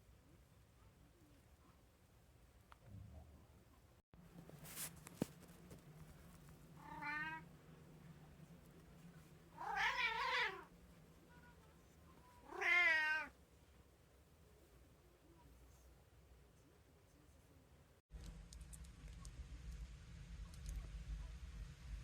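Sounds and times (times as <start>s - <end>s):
cat meowing: 6.8s - 7.4s, 9.6s - 10.7s, 12.4s - 13.4s.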